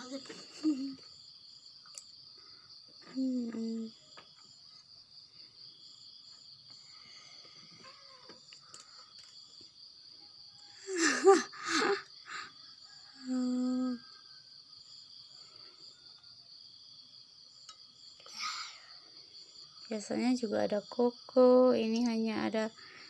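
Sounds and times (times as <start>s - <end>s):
crickets chirping: 0.0s - 23.0s.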